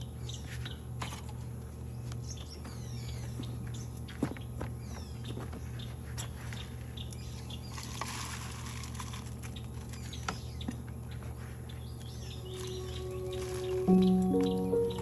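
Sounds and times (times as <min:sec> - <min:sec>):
rustle: 0:07.6 - 0:10.0
faint bird chirps: 0:10.0 - 0:15.0.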